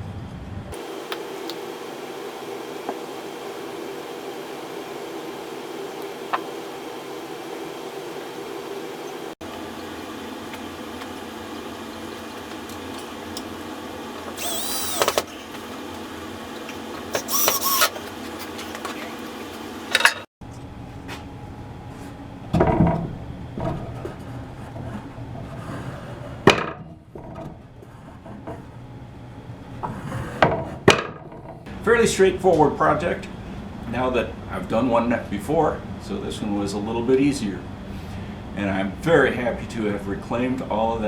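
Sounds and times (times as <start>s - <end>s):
machine hum: 0.6s - 22.5s
power tool bursts: 14.4s - 15.6s, 17.1s - 18.1s.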